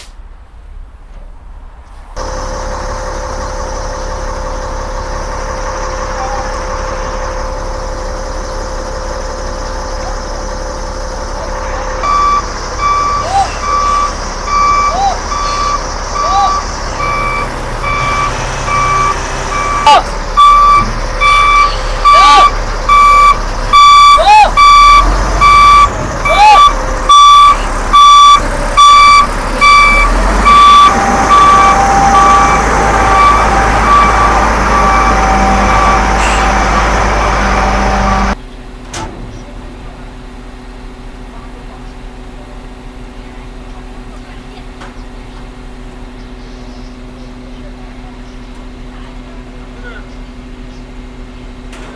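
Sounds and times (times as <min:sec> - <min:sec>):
diesel engine running: 0:02.0 - 0:51.9
reversing alarm beeping: 0:02.4 - 0:38.4.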